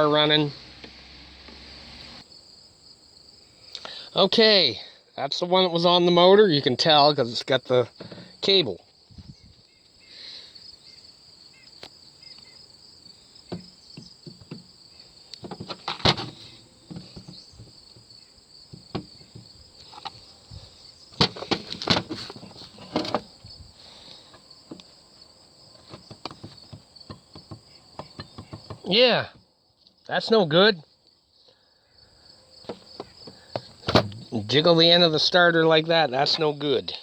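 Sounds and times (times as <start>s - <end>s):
crickets chirping: 0.0s - 37.0s
starter motor being handled: 15.3s - 18.1s, 18.7s - 23.4s, 25.8s - 28.9s, 32.6s - 34.3s.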